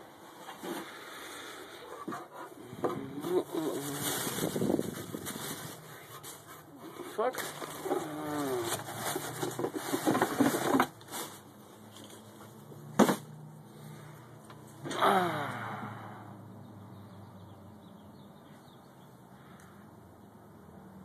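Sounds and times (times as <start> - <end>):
packaging crackling and rustling: 3.2 - 13.3.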